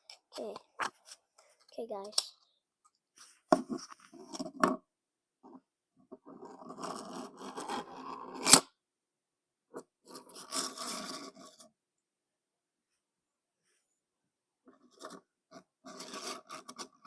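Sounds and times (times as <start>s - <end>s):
fidget toy scraping: 6.3s - 8.6s, 10.1s - 11.6s, 15.8s - 17.0s.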